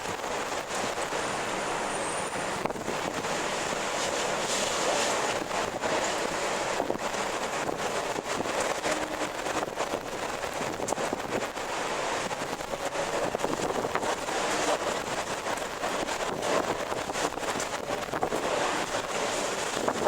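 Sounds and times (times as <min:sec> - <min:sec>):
strong wind gusting: 0:00.0 - 0:20.0.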